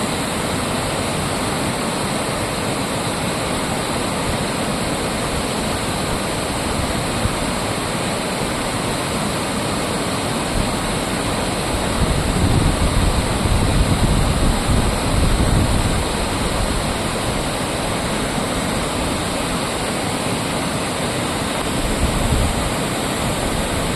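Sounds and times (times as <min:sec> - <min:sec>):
waterfall rushing: 0:00.0 - 0:23.9
wind buffeting microphone: 0:11.7 - 0:19.4, 0:21.6 - 0:23.9.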